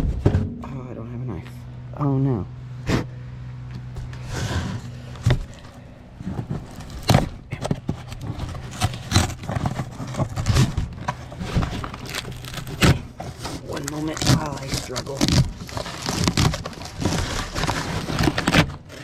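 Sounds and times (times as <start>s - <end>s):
packaging being torn open: 6.6s - 19.0s.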